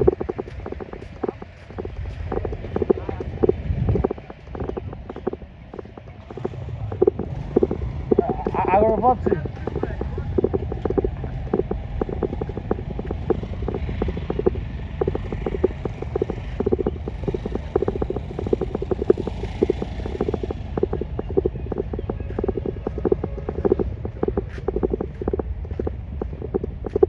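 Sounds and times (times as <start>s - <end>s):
raindrops tapping close: 0.0s - 27.0s.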